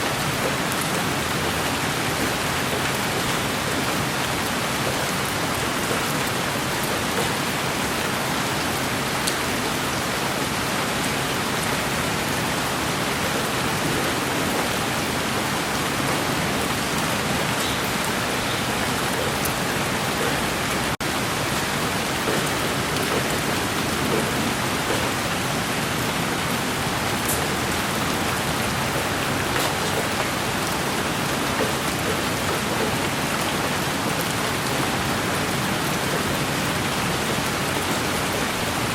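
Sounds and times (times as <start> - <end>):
steady rain: 0.0 - 38.9
rain drop ticks: 0.2 - 7.7, 8.7 - 10.1, 21.6 - 38.9.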